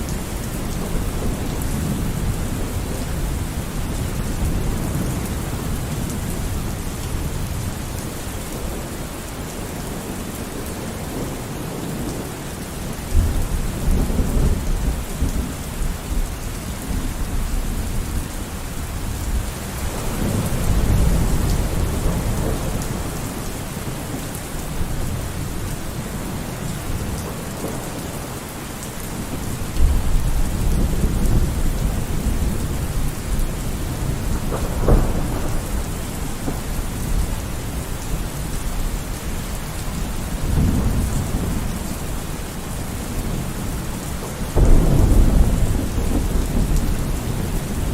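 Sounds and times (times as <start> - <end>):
steady rain: 0.0 - 47.9
thunder rumbling: 19.0 - 27.9, 29.1 - 47.9.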